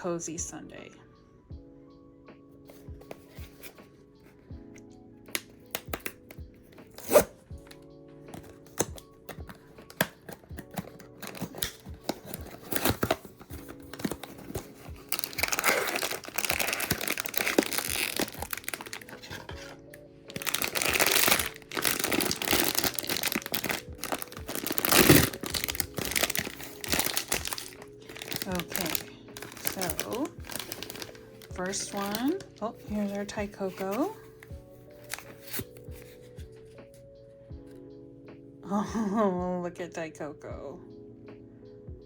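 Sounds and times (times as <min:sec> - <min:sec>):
soft background music: 0:00.0 - 0:42.0
packaging clicks and taps: 0:04.8 - 0:06.4, 0:07.0 - 0:33.9
packaging tearing and crinkling: 0:06.9 - 0:07.3, 0:08.4 - 0:32.4.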